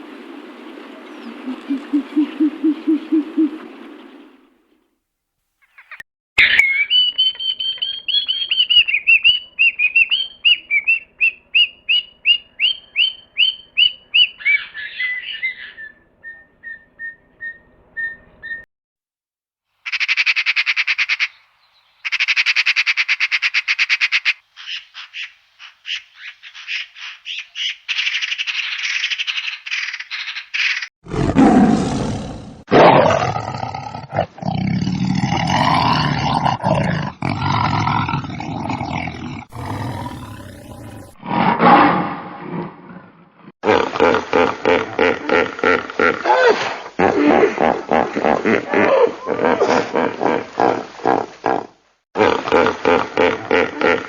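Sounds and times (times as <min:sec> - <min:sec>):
low animal roar: 0:31.0 - 0:43.2.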